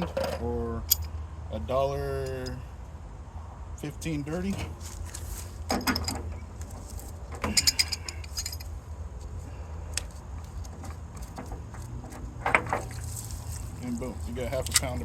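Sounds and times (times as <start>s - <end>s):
brass fittings clinking on metal: 5.7s - 6.4s, 7.3s - 8.7s.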